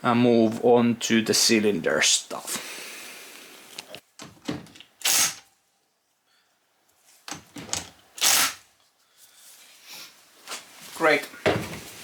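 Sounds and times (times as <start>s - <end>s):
knocks and clatters on workbench: 11.4s - 11.9s.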